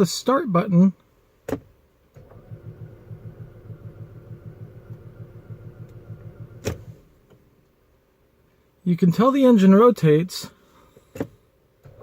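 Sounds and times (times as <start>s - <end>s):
car engine cranking without starting: 2.2s - 7.0s.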